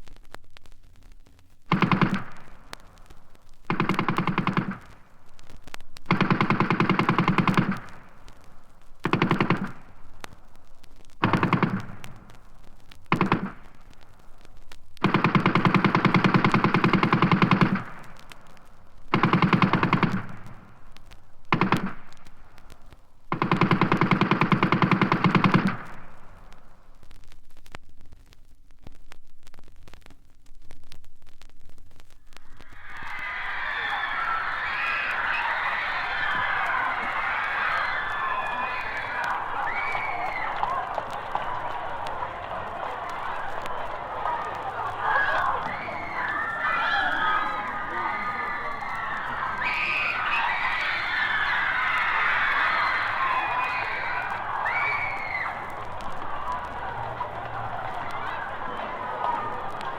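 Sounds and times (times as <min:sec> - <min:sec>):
automatic gunfire bursts: 0:01.7 - 0:02.6, 0:03.7 - 0:05.0, 0:06.1 - 0:08.1, 0:09.0 - 0:09.9, 0:11.2 - 0:12.2, 0:13.1 - 0:13.8, 0:15.0 - 0:18.2, 0:19.1 - 0:20.6, 0:21.5 - 0:22.2, 0:23.3 - 0:26.0.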